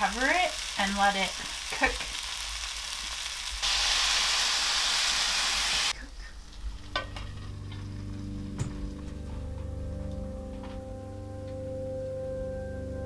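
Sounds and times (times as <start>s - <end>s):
food sizzling in a hot pan: 0.0s - 7.9s
soft background music: 6.6s - 13.0s.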